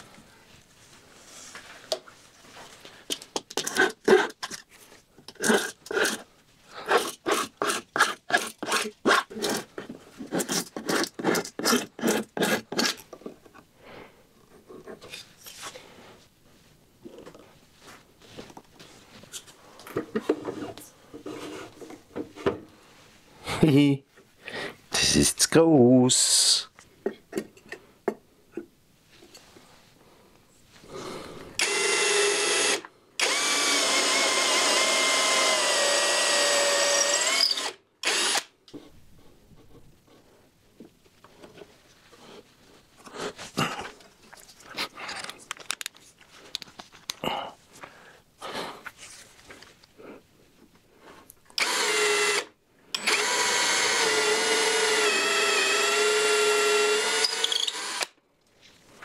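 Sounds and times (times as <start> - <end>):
power tool motor running: 31.6 - 38.5, 51.6 - 52.4, 53.0 - 58.1.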